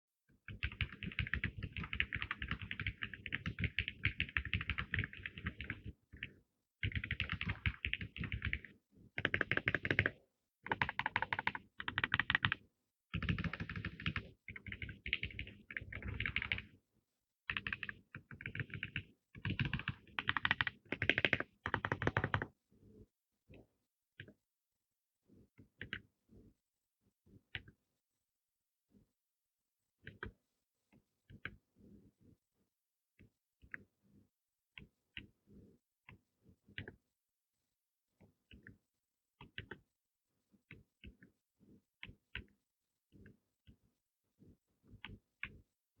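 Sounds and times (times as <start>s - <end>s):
mechanical keyboard typing: 0.5s - 5.9s, 6.8s - 12.6s, 13.2s - 16.6s, 17.5s - 22.5s.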